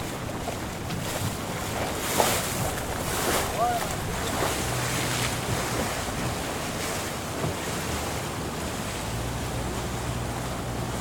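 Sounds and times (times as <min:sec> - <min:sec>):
wind buffeting microphone: 0:00.0 - 0:07.6
water washing around boat: 0:00.0 - 0:11.0.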